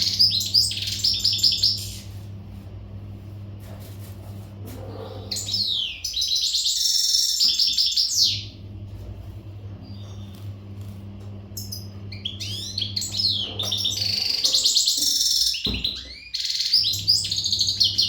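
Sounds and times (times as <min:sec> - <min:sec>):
goldfinch twittering and trilling: 0:11.6 - 0:18.0.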